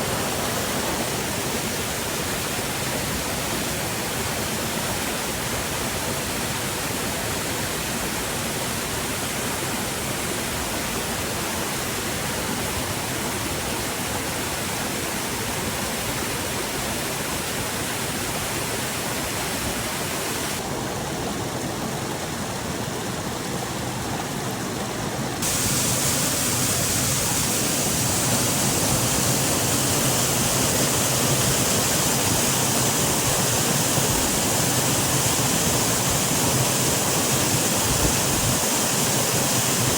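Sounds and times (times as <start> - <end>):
waterfall rushing: 0.0 - 6.9, 14.4 - 39.9.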